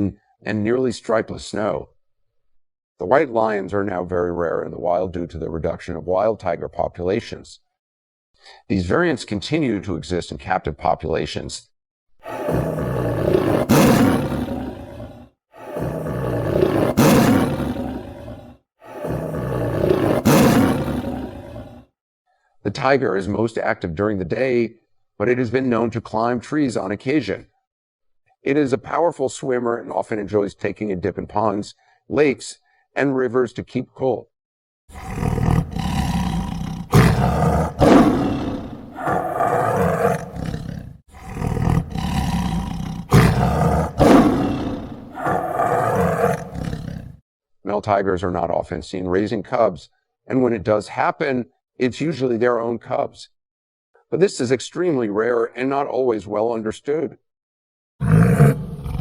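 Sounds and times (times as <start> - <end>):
tiger roaring: 12.2 - 21.9, 34.9 - 47.2, 58.0 - 59.0.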